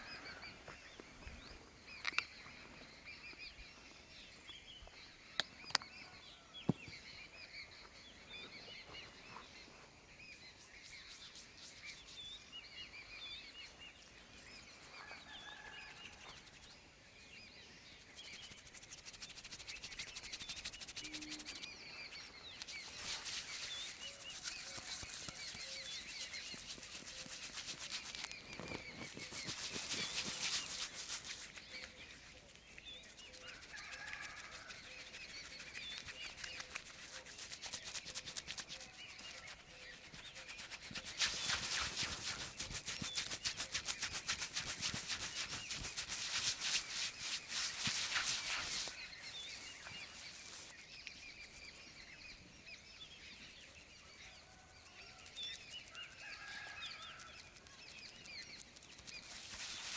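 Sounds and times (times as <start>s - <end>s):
hands rubbing hair and scalp: 10.5s - 16.8s, 18.0s - 52.3s, 53.3s - 59.9s.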